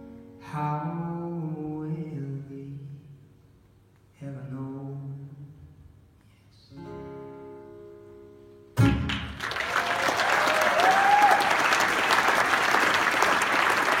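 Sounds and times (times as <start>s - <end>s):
audience applause: 9.1s - 14.0s
audience cheer: 9.4s - 14.0s.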